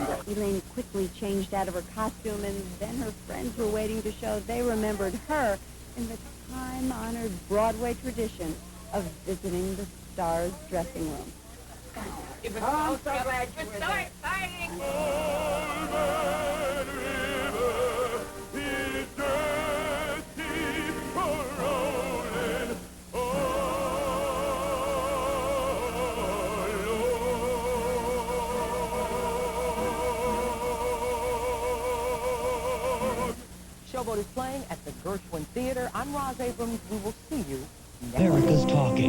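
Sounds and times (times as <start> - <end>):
low electrical hum: 0.0 - 39.0
person singing operatically: 14.8 - 33.4, 38.2 - 39.0.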